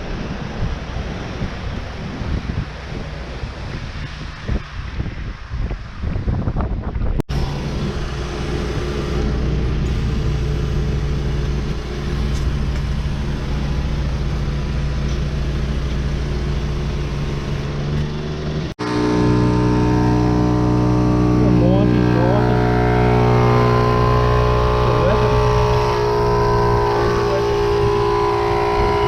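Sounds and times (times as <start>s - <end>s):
wind noise: 0.0s - 29.0s
vehicle engine running: 7.3s - 29.0s.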